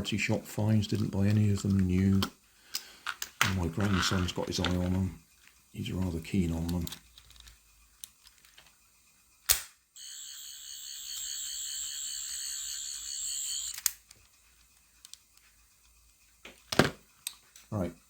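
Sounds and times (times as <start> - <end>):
toy warbling electronic buzz: 10.0 - 13.8.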